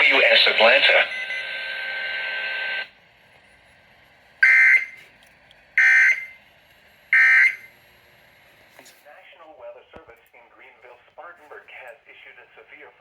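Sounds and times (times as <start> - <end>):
radio noise hiss: 0.0 - 3.0, 8.5 - 13.0.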